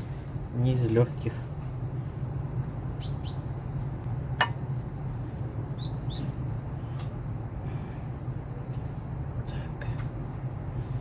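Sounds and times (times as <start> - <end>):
small birds chirping: 0.0 - 0.3, 2.7 - 3.7, 4.6 - 7.0
steady low hum: 0.0 - 11.0.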